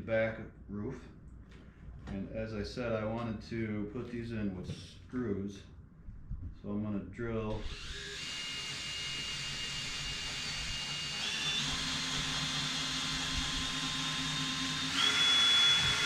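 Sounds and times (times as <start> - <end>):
electric drill boring into wood: 7.6 - 16.0.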